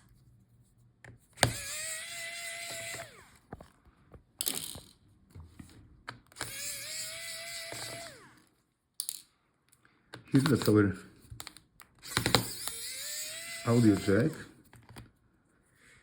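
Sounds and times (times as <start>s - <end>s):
electric screwdriver motor whine: 1.4s - 3.4s, 6.4s - 8.4s, 12.0s - 14.4s
screws and tools clicking: 1.4s - 3.4s, 6.3s - 8.4s, 11.4s - 14.5s.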